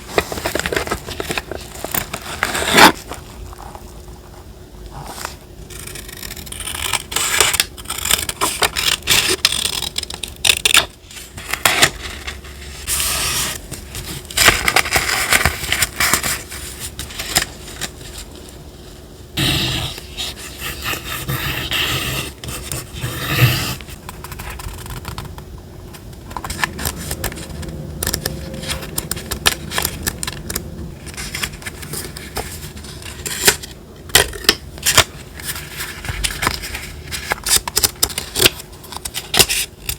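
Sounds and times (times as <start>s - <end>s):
paper rustling and crackling: 0.0s - 3.8s, 7.5s - 18.6s, 26.2s - 33.8s, 34.8s - 39.9s.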